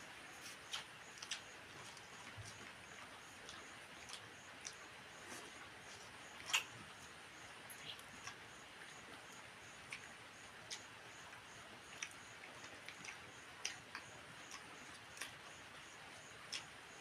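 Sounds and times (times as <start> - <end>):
quiet hiss: 0.0 - 17.0
person eating mouth clicks: 0.7 - 2.0, 6.4 - 6.7.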